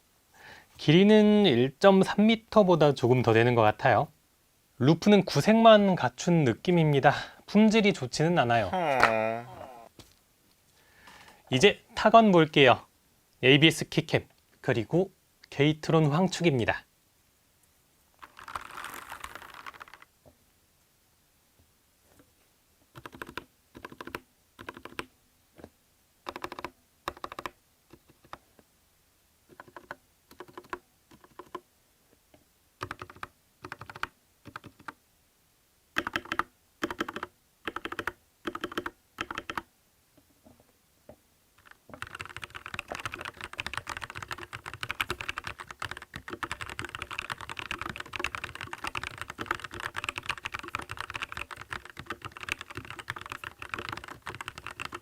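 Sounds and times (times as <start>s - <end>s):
mechanical keyboard typing: 18.2s - 20.0s, 23.0s - 25.1s, 26.2s - 28.4s, 29.5s - 31.6s, 32.8s - 35.0s, 36.0s - 39.7s, 41.6s - 55.0s.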